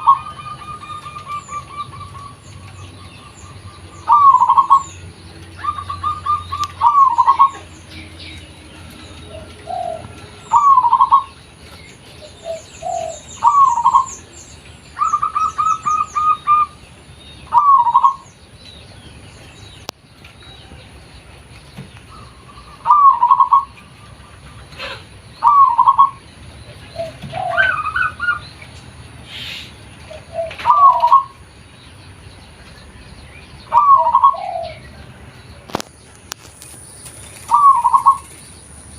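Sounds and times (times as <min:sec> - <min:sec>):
dove cooing: 0:00.0 - 0:07.7, 0:09.0 - 0:11.4, 0:12.2 - 0:14.2, 0:17.5 - 0:18.2, 0:22.1 - 0:28.4, 0:29.3 - 0:31.4, 0:33.7 - 0:34.9, 0:37.3 - 0:38.4
small bird high chirps: 0:37.0 - 0:38.7.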